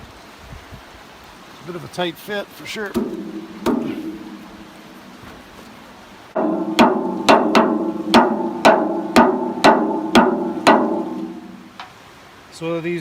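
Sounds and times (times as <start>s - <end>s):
hammer striking metal with ringing: 3.0s - 4.7s, 6.4s - 11.7s.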